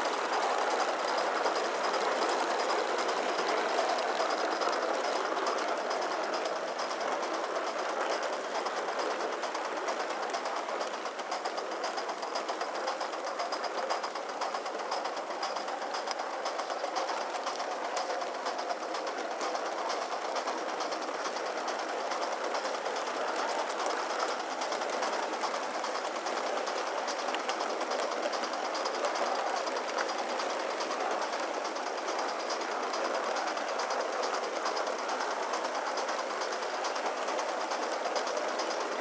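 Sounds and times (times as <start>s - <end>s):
steam engine chuffing: 0.0s - 39.0s
wheels clattering on track: 0.0s - 39.0s.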